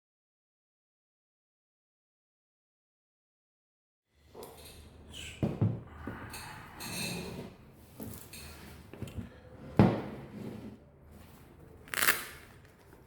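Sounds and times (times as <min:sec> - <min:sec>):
rustling and scraping objects: 0:05.4 - 0:13.0.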